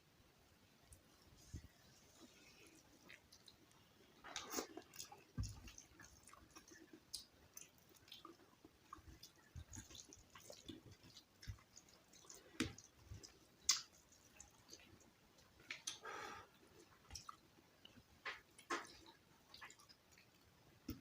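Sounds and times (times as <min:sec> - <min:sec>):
wet squishing of food: 0:00.9 - 0:21.0
close chewing: 0:01.5 - 0:21.0
mouth clicks and smacks: 0:03.0 - 0:14.9, 0:15.6 - 0:16.0.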